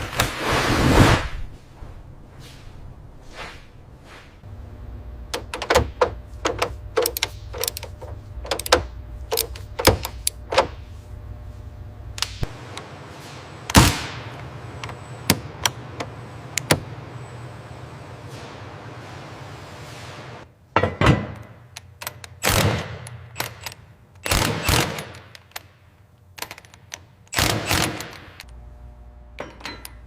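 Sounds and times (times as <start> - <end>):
low steady hum: 3.8 - 22.4, 28.4 - 30.0
sharp clicks and knocks: 5.3 - 10.8, 20.8 - 28.6.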